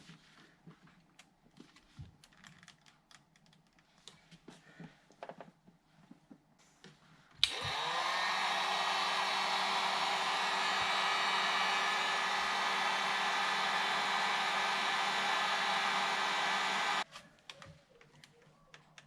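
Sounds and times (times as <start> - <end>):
heat gun switch click: 7.4 - 9.8
heat gun fan whine: 7.4 - 17.0
blown air rushing: 7.5 - 17.0.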